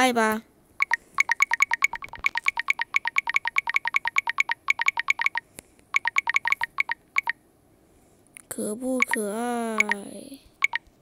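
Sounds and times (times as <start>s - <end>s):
electronic keyboard ticks: 0.8s - 7.4s, 9.0s - 9.2s, 9.8s - 10.0s, 10.6s - 10.9s.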